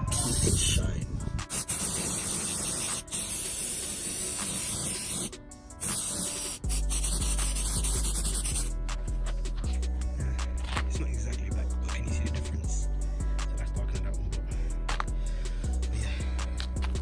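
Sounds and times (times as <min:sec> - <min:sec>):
music with bass beat: 0:00.0 - 0:17.0
aerosol can spraying: 0:00.1 - 0:00.8, 0:01.4 - 0:08.7.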